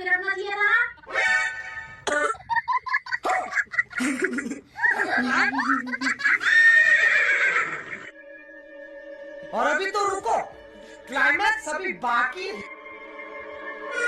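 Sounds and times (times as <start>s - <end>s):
comic vocal cries: 3.1s - 8.1s
steady music tones: 8.1s - 14.0s.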